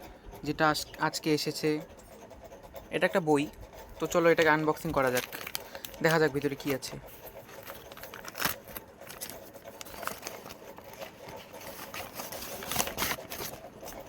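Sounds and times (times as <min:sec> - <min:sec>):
packaging rustling and crinkling: 0:05.0 - 0:06.8, 0:07.5 - 0:14.0.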